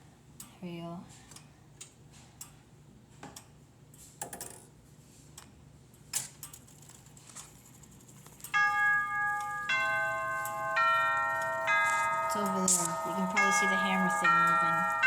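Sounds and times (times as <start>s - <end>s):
clock chime bell notes: 8.6s - 15.0s.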